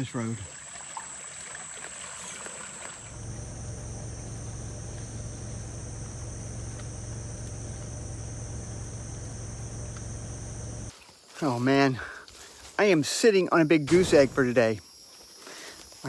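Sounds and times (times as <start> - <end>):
insect chorus: 0.0 - 16.0
steady low hum: 3.0 - 10.9, 13.9 - 14.8.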